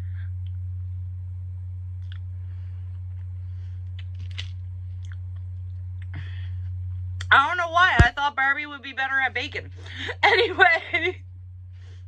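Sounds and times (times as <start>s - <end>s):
steady low hum: 0.0s - 12.0s
person chewing with mouth clicks: 2.0s - 2.3s, 4.0s - 6.2s
soft crunches: 2.0s - 6.1s.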